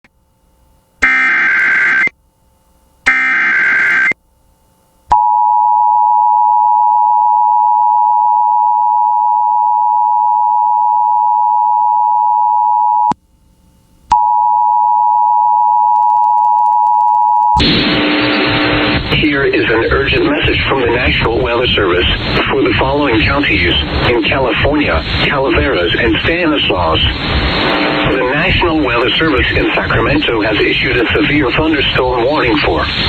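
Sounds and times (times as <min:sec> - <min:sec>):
harsh two-tone alert signal: 0:01.0 - 0:02.1, 0:03.1 - 0:04.2.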